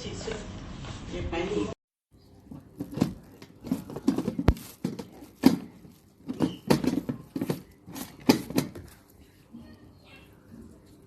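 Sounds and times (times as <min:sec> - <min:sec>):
kitchen items knocking: 0:02.4 - 0:09.0.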